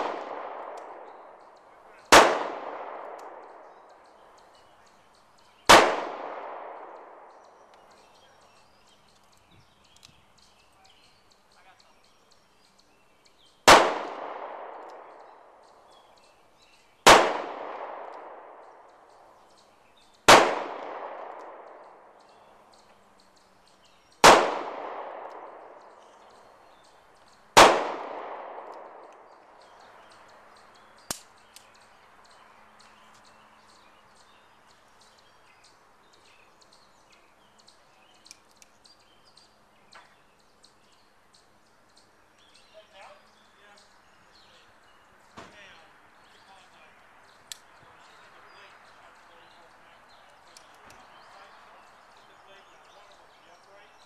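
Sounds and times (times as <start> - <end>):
handgun shots with echo: 0.0 - 1.4, 2.0 - 3.8, 5.7 - 7.4, 13.7 - 15.3, 17.0 - 18.7, 20.3 - 22.0, 24.2 - 25.9, 27.6 - 29.3.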